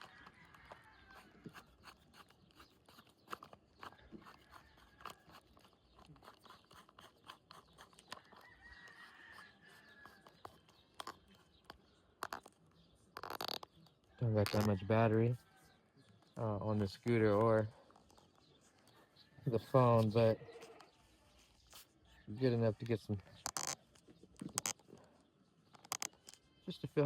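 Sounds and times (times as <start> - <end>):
small clicks and crunches of handling: 0.0 - 15.4, 16.0 - 22.0, 22.7 - 26.5
rooster crowing faintly: 3.8 - 5.7, 8.2 - 10.7.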